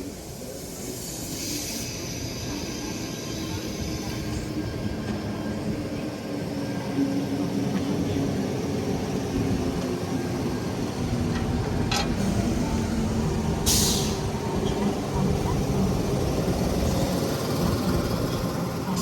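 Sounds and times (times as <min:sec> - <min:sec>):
air hiss: 0:13.6 - 0:14.2.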